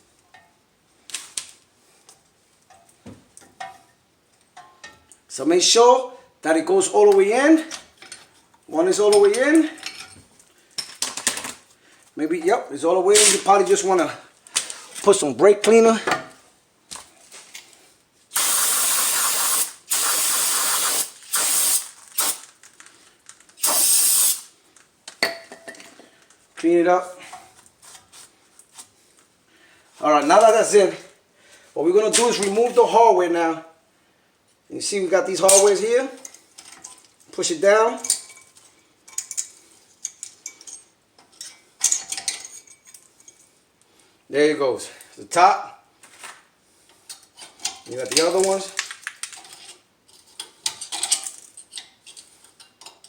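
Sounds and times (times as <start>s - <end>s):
aerosol spray hissing: 18.4s - 22.4s, 23.6s - 24.5s.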